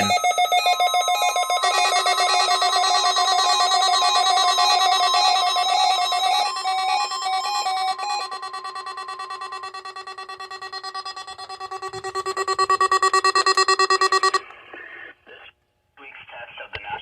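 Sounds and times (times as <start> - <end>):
steady high alarm tone: 0.0 - 14.4
rapid warbling electronic beeps: 8.2 - 14.4.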